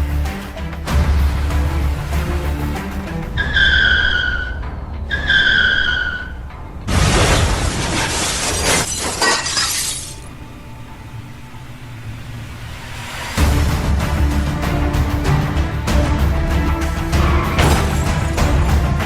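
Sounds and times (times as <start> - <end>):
background music: 0.0 - 19.0
tyres screeching: 3.4 - 6.5, 17.2 - 18.8
crash with shattering glass: 6.9 - 10.3, 17.5 - 18.8.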